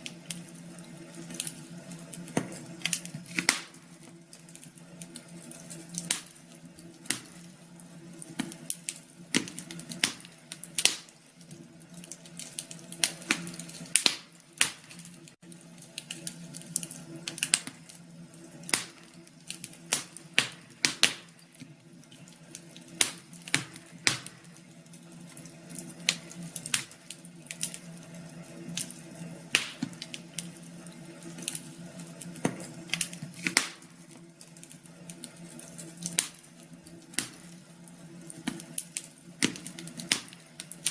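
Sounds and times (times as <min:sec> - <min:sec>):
wood fire crackling and popping: 0:00.0 - 0:40.9.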